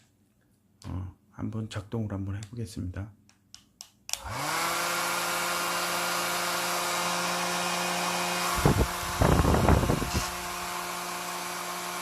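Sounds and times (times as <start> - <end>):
hair dryer whirring: 4.1 - 12.0.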